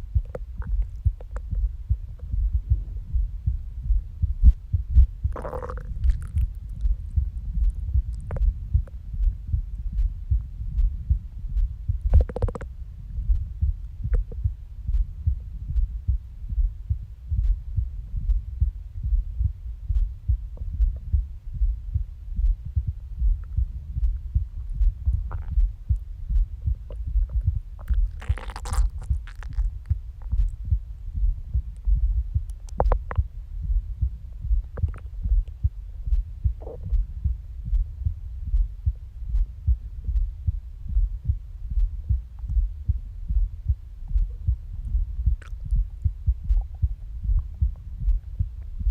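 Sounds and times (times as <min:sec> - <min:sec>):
stomach noises: 0:00.0 - 0:02.3, 0:04.4 - 0:09.4, 0:11.6 - 0:12.7, 0:23.4 - 0:30.7, 0:32.5 - 0:33.3, 0:34.6 - 0:37.1, 0:44.1 - 0:48.2
heartbeat low thuds: 0:00.0 - 0:48.9.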